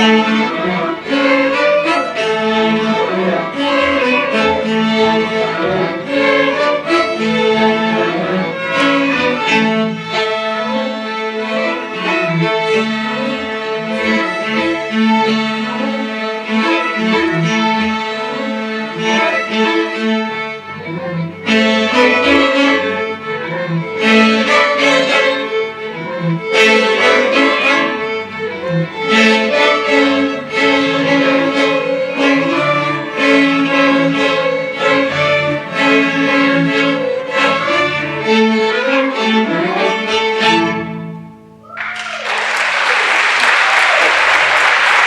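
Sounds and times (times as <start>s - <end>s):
string orchestra playing: 0.0s - 41.7s.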